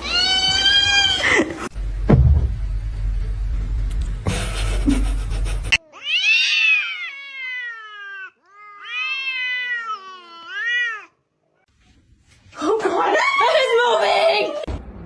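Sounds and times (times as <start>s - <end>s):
cat meowing: 0.0s - 1.2s, 5.9s - 11.2s
rumbling noise: 1.7s - 5.8s, 14.6s - 15.0s.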